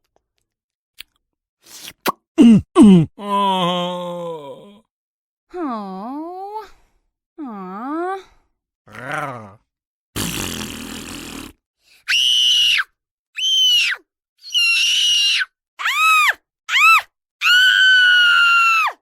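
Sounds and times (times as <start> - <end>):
throaty grunt: 2.4 - 4.8, 8.9 - 11.4
high-pitched shrieking screams: 12.1 - 19.0.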